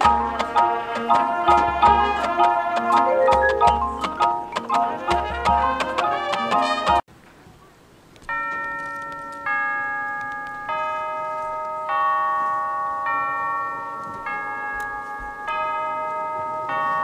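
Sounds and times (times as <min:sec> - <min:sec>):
bell-like chords on mallet percussion: 0:03.0 - 0:04.6.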